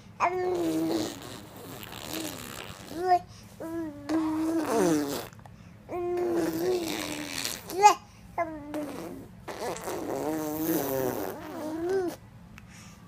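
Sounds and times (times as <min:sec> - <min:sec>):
person making pitched noises: 0:00.5 - 0:03.1, 0:08.6 - 0:12.2.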